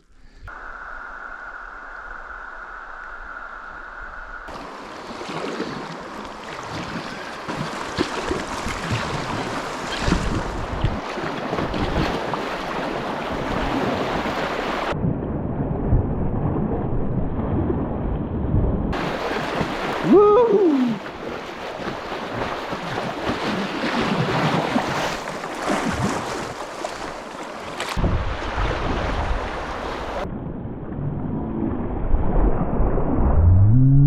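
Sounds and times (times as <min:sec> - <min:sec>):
rushing river water: 0:04.5 - 0:15.0, 0:19.0 - 0:30.3
water splashes: 0:04.5 - 0:15.0, 0:19.0 - 0:30.3
wind buffeting microphone: 0:06.0 - 0:24.6.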